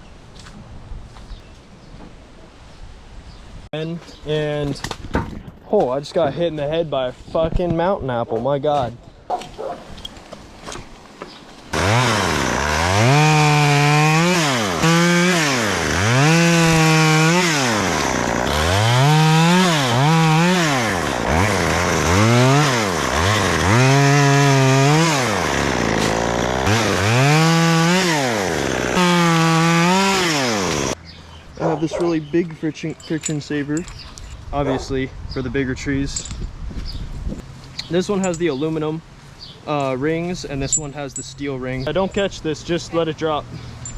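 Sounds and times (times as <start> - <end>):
chainsaw engine revving: 11.7 - 31.0.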